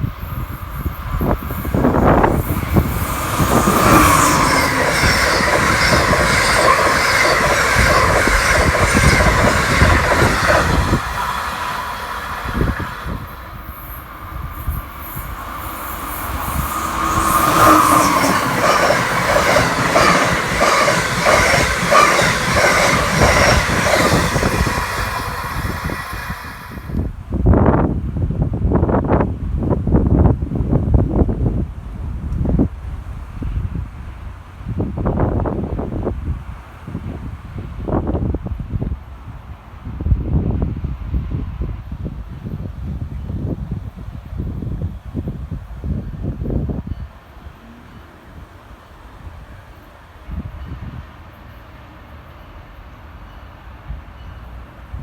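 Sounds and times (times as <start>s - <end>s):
train wheels on rails: 0.0s - 27.8s
clickety-clack over rail joints: 1.3s - 13.3s, 14.6s - 27.1s.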